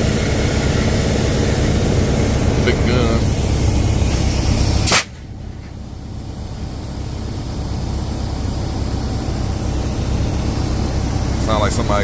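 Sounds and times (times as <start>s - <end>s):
compressed air blast: 0.0s - 5.7s
low steady rumble: 0.0s - 12.0s.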